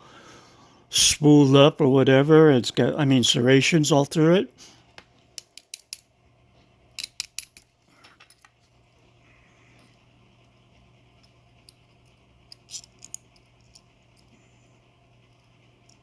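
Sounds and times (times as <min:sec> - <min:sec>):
light metallic clicks of lock parts: 0:05.4 - 0:06.1, 0:07.0 - 0:08.6, 0:12.4 - 0:14.3.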